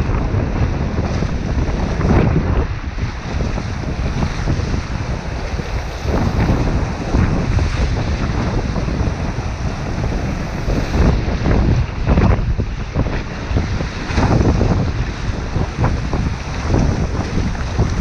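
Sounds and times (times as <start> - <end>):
wind buffeting microphone: 0.0 - 18.0
river water rushing: 3.4 - 11.6, 14.2 - 18.0.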